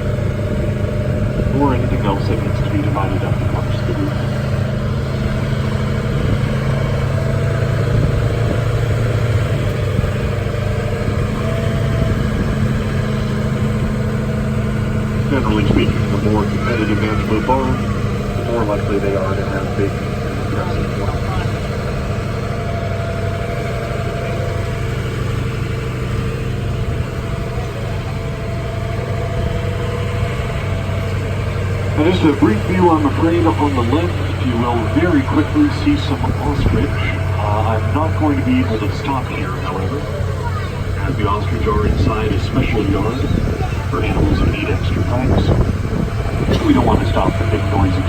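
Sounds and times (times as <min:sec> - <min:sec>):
faint steady whine: 0:00.0 - 0:11.4, 0:12.1 - 0:48.0
tram engine humming: 0:00.0 - 0:48.0.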